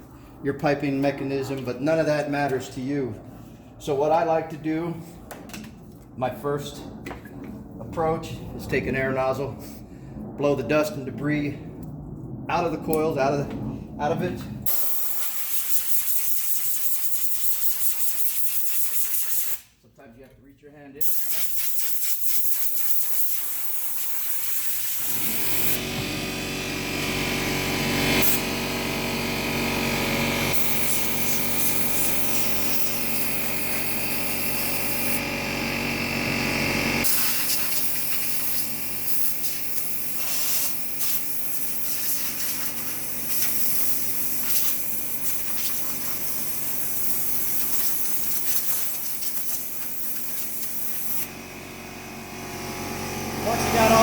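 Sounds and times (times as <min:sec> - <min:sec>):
compressed air nozzle hissing: 0:14.7 - 0:19.7, 0:21.0 - 0:25.8, 0:30.5 - 0:35.2, 0:37.0 - 0:51.3
air compressor motor humming: 0:25.0 - 0:54.0.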